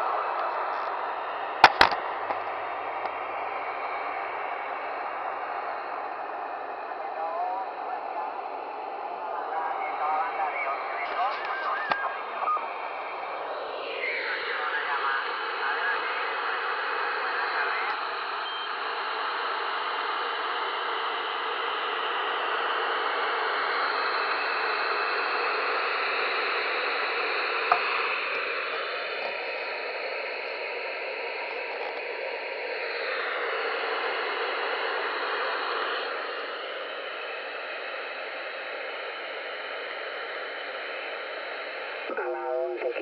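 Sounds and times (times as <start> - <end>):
radio static hiss: 0.0 - 43.0
sharp click: 1.6 - 2.4.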